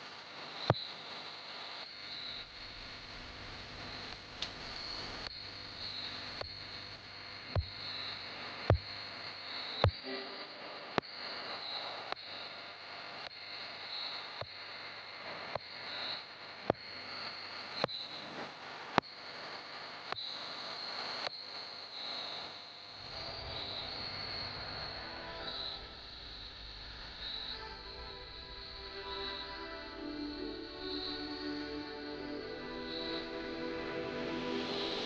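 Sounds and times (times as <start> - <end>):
insects trilling: 22.0 - 35.0.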